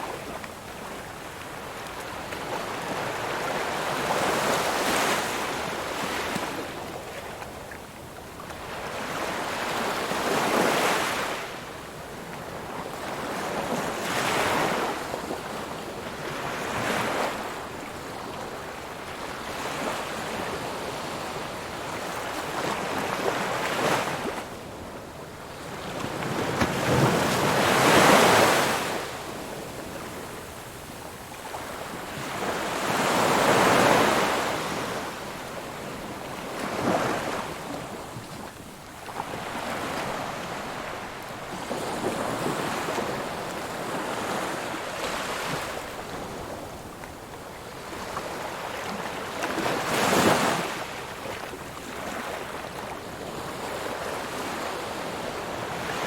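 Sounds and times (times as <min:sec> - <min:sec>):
ocean waves breaking on shore: 0:12.5 - 0:56.0.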